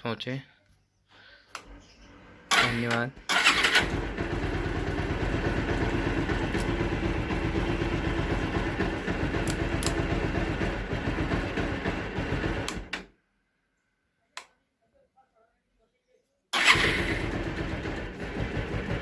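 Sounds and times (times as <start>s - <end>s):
motorcycle engine idling: 2.6s - 13.0s, 16.6s - 19.0s.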